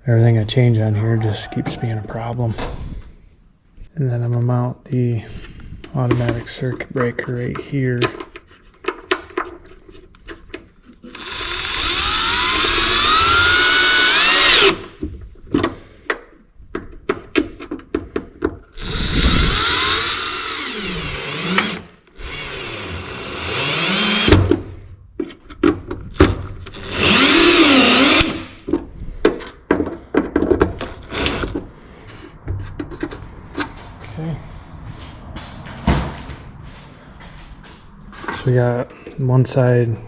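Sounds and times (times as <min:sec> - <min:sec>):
power drill running: 0:11.0 - 0:14.9, 0:18.8 - 0:24.4, 0:26.1 - 0:28.6, 0:30.8 - 0:31.6.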